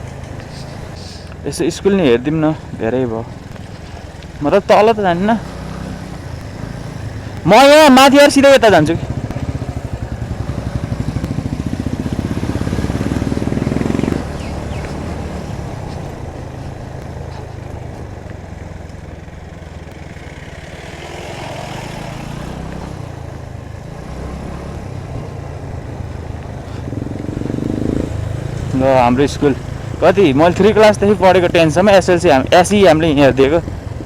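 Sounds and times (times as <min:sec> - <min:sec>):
motorcycle engine thumping: 0:02.6 - 0:20.9.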